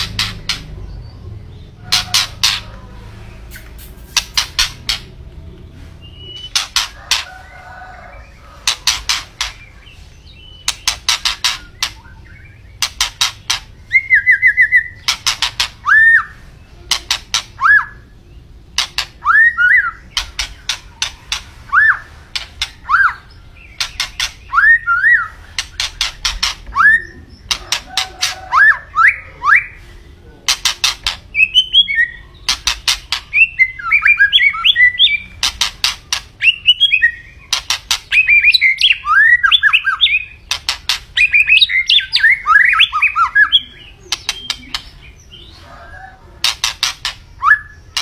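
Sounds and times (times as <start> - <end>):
bird rapid clicking notes: 0.0 - 0.8, 3.5 - 5.1, 6.4 - 7.3, 10.6 - 12.0, 12.8 - 13.8, 15.0 - 15.8, 16.9 - 17.6, 18.7 - 19.3, 20.0 - 21.5, 23.8 - 24.7, 25.5 - 26.8, 32.4 - 33.5, 35.3 - 36.6, 37.5 - 42.2
bird whistling: 6.0 - 6.9, 10.3 - 18.2, 19.0 - 22.1, 22.8 - 29.8, 31.0 - 32.2, 33.2 - 35.6, 36.4 - 40.5, 41.2 - 45.2, 47.4 - 48.0.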